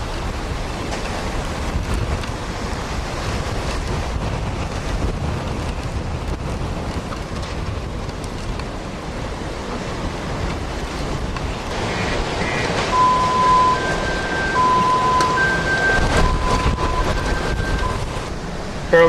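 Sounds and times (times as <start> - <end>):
wind buffeting microphone: 0.0 - 19.0
two-tone electronic beeps: 12.8 - 18.1.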